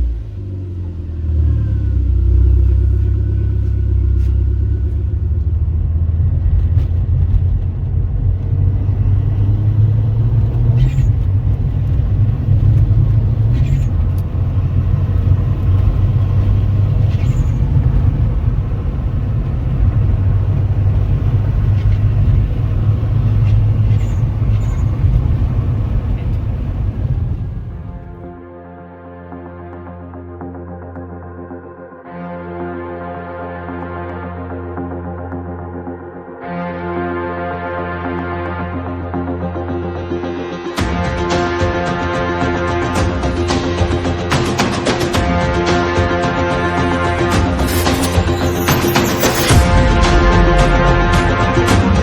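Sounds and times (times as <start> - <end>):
car exhaust rumble: 0.0 - 28.4, 47.5 - 52.0.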